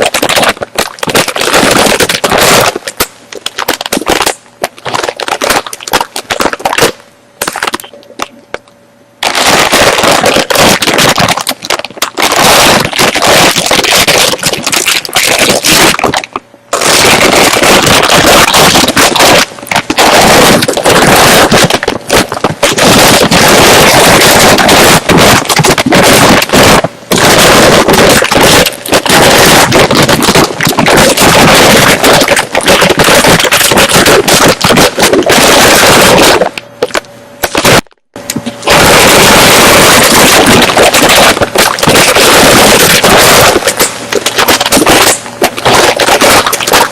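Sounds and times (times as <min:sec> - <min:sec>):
chips crunched and chewed: 0:38.7 - 0:46.9.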